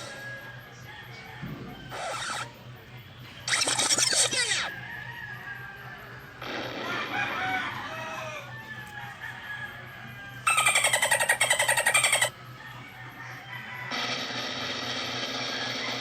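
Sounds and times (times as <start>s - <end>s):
bird chirps and calls: 1.9s - 2.5s, 3.4s - 4.7s, 10.5s - 12.3s
raspy pulsing bird call: 1.9s - 2.6s, 3.4s - 4.8s, 10.4s - 12.4s.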